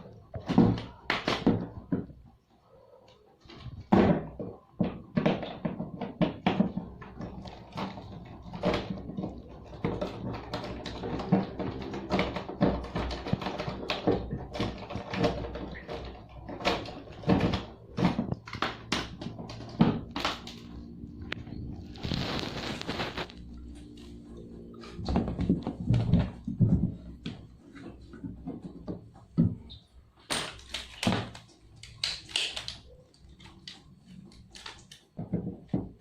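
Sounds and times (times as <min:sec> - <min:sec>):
hand tools clattering on plastic: 0:03.4 - 0:20.9.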